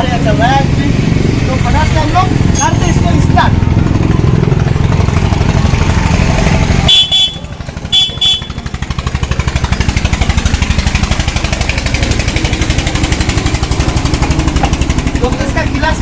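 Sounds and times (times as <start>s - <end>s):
motorcycle engine idling: 1.2s - 16.0s
vehicle horn beeps: 6.9s - 8.6s.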